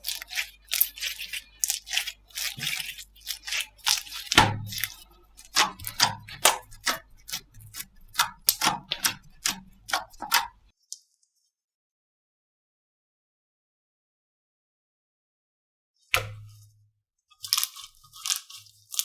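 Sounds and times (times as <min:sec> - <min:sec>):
slime squishing with clicks and pops: 0:00.0 - 0:10.7.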